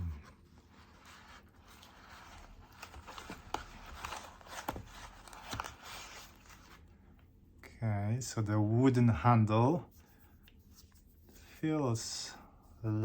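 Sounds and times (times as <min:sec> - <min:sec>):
soft rustling of packaging: 0:00.0 - 0:07.6.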